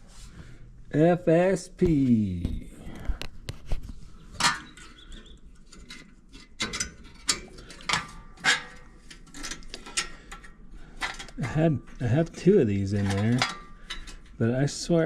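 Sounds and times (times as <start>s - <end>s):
metal parts clanking: 4.4s - 14.5s.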